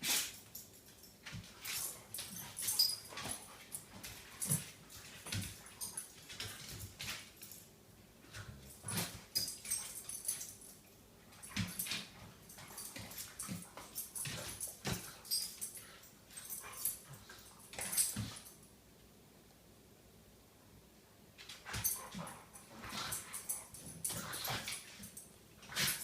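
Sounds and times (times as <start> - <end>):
dogs scuffling: 0.5 - 7.6.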